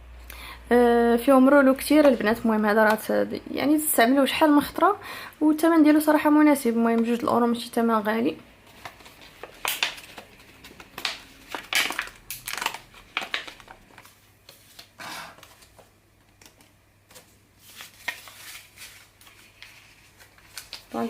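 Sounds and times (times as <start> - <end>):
paper and plastic crinkling: 8.6 - 21.0.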